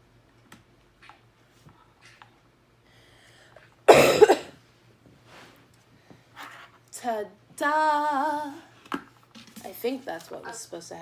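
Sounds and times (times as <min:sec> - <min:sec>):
person coughing: 0:03.9 - 0:04.6.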